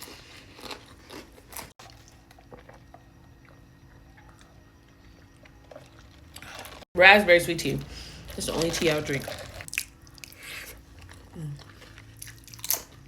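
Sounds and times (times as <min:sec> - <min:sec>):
crunchy bites: 0:00.0 - 0:03.6, 0:08.1 - 0:13.0
soft chewing: 0:00.0 - 0:06.9.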